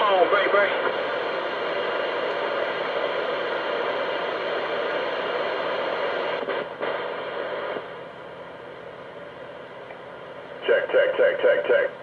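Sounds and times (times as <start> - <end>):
radio static hiss: 0.0 - 8.1, 10.5 - 12.0.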